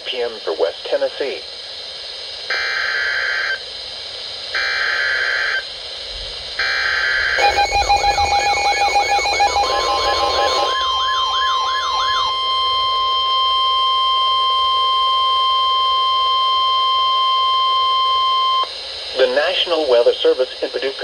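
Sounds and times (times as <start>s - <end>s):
steady warning tone: 4.4s - 5.8s, 6.5s - 21.0s
buzzing data bursts: 6.6s - 15.7s
wailing siren-like sweep: 6.6s - 18.7s
rapid beeping: 7.3s - 19.6s.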